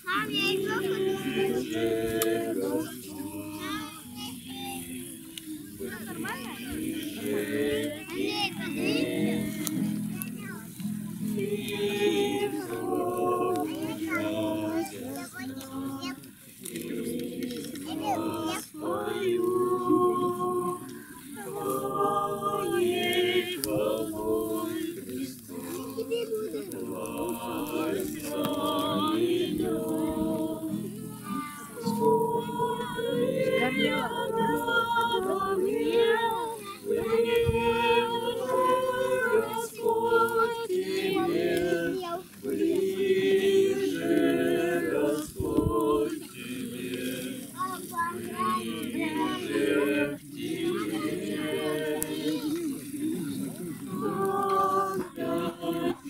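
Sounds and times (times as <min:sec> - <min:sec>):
group singing long notes: 0:00.0 - 0:56.0.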